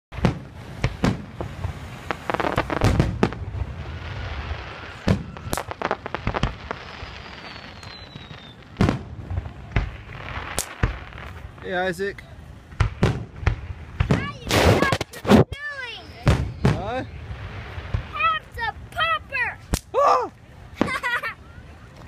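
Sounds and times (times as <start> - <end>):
fireworks banging: 0.1 - 19.9, 20.8 - 21.3
fireworks crackling: 0.1 - 20.0, 20.6 - 22.0
falling whistle: 6.8 - 8.6.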